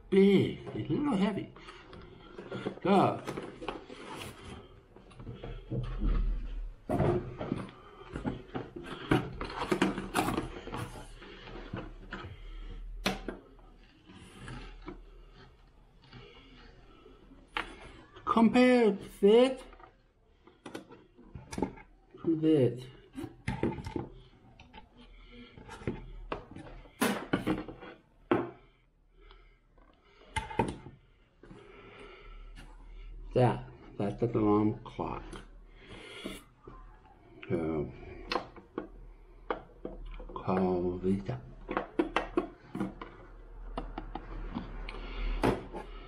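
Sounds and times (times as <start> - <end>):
hard objects knocking: 41.6 - 46.0.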